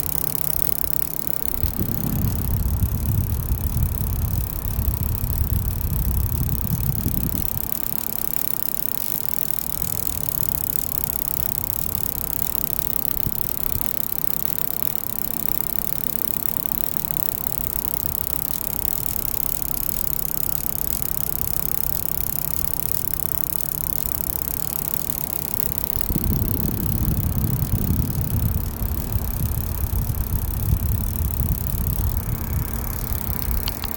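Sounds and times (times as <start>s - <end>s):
power supply hum and fan whir: 0.0s - 33.9s
heavy low rumble: 1.6s - 7.6s, 26.0s - 33.9s.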